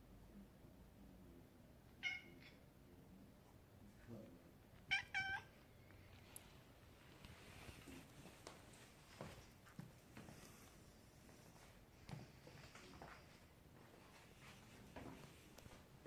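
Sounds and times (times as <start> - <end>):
cat meowing: 1.9 - 2.6, 4.9 - 5.6.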